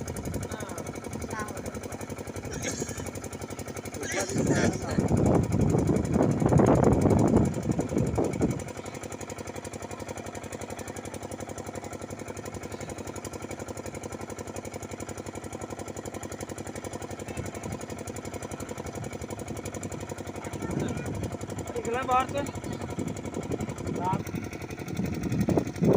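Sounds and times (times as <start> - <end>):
small engine running steadily: 0.0 - 25.9.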